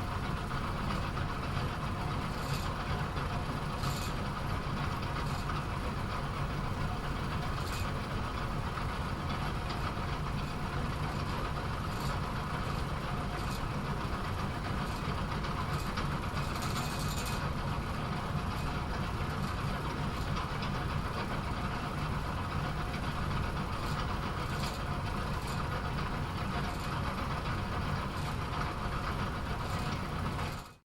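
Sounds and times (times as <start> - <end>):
machine rattle: 3.7 - 6.0, 9.2 - 30.8.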